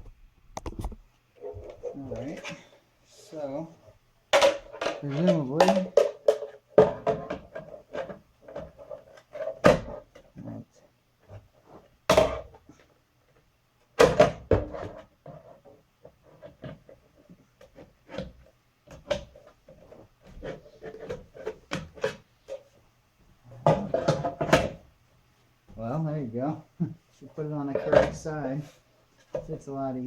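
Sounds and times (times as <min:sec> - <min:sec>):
plastic holder knocking and clattering: 0:04.4 - 0:10.2, 0:23.6 - 0:24.8.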